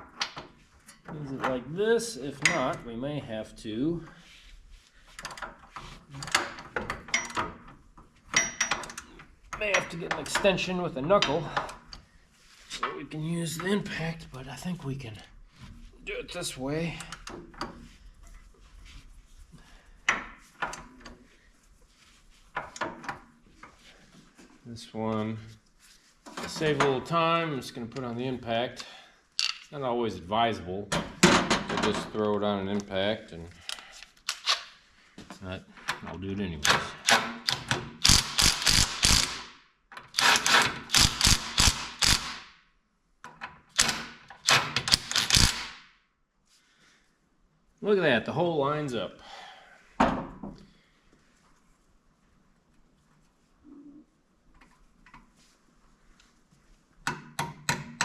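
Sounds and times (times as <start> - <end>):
hand tools knocking and clacking: 2.4 - 2.8, 6.2 - 7.6, 8.3 - 11.9, 57.0 - 58.0
impact wrench hammering: 37.0 - 39.5, 40.2 - 42.4, 43.8 - 45.7.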